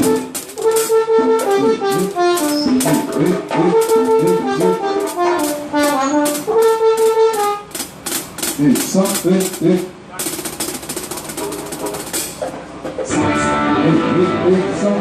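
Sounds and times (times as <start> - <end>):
horn section playing riff: 0.0 - 9.6
steady percussion beat: 0.0 - 13.1.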